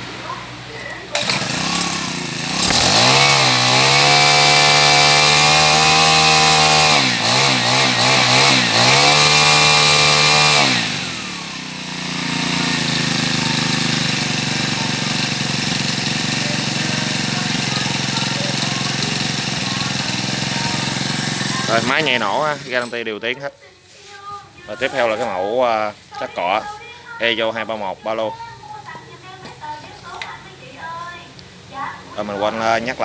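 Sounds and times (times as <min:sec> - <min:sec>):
brush cutter engine revving: 0:01.0 - 0:23.0.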